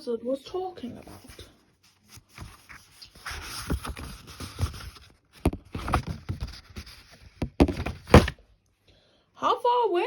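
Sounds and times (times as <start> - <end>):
rustling: 0.8 - 8.4.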